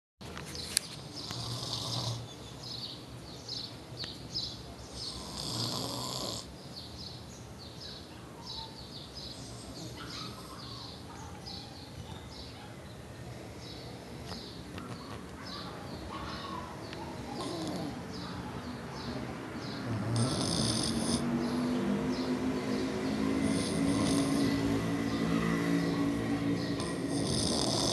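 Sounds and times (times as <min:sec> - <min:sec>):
person snoring: 0:05.1 - 0:06.5, 0:20.1 - 0:21.4, 0:23.4 - 0:24.6, 0:26.8 - 0:27.9.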